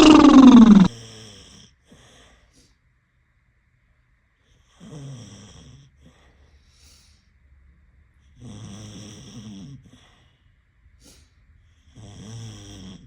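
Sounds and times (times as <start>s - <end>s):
person snoring: 0.0s - 1.0s.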